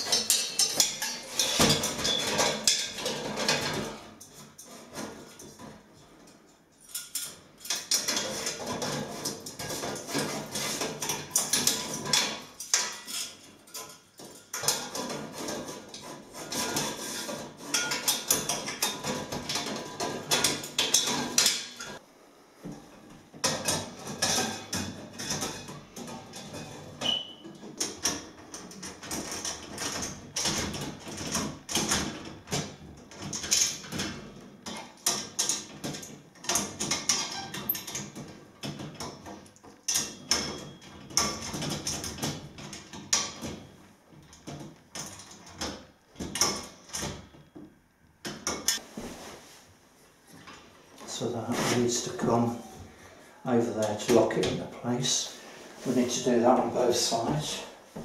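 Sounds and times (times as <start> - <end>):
steel parts clanking and rattling: 0.0 - 22.0.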